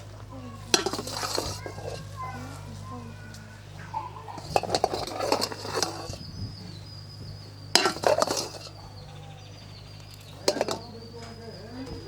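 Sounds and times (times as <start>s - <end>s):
kitchenware clinking and clattering: 0.0s - 6.3s, 7.7s - 9.1s, 10.0s - 12.0s
steady low hum: 0.0s - 12.0s.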